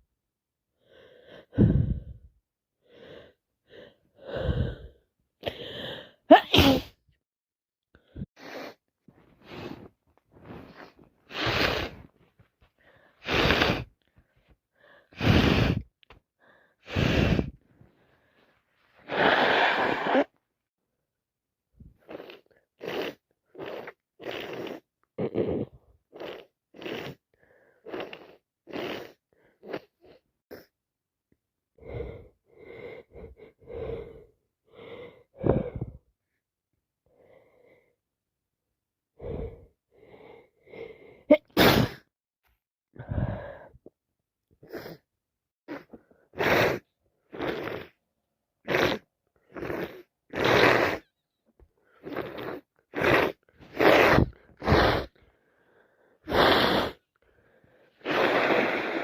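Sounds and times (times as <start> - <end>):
person sneezing: 6.3 - 7.0, 19.1 - 20.3, 41.3 - 42.1.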